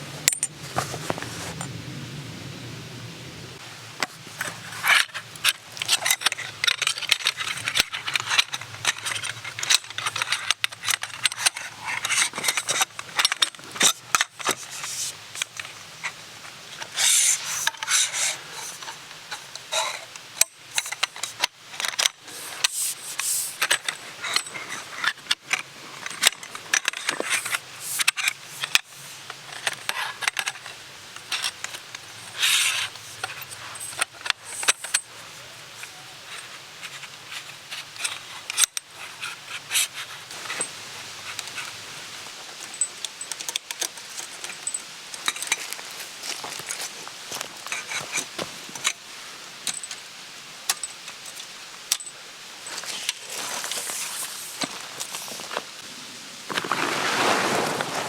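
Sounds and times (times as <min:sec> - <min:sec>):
rustling and scraping: 0:00.0 - 0:01.8, 0:04.0 - 0:49.1, 0:52.6 - 0:58.0.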